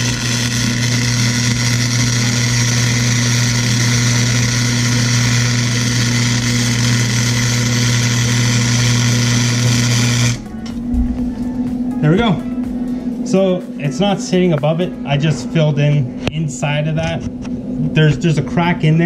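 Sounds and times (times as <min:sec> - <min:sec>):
welder arc crackling: 0:00.0 - 0:10.8
electrical hum: 0:00.0 - 0:19.0.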